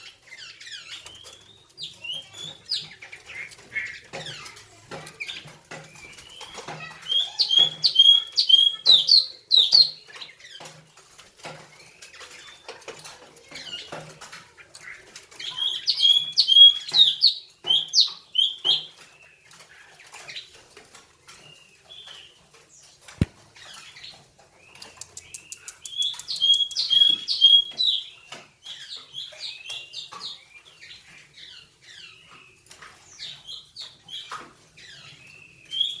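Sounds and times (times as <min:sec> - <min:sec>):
songbird whistling song: 0:00.0 - 0:04.4, 0:05.8 - 0:10.0, 0:15.4 - 0:19.0, 0:24.6 - 0:36.0
bird chirps and twitters: 0:00.0 - 0:36.0.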